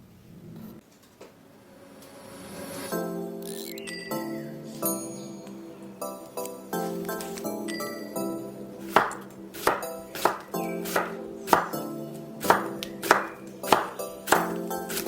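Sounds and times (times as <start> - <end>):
light background music: 1.6 - 15.0
knife chopping on cutting board: 8.9 - 11.8, 12.4 - 15.0.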